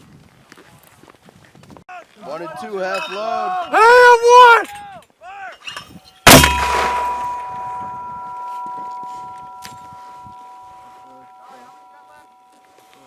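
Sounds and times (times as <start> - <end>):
metallic ringing: 5.6 - 13.0.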